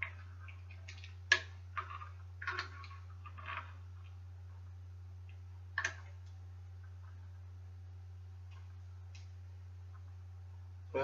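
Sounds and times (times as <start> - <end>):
steady low hum: 0.0 - 11.0.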